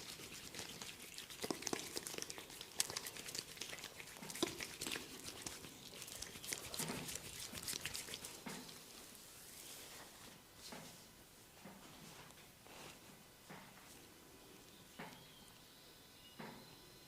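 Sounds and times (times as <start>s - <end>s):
soft rubbing hiss: 0.0s - 14.7s.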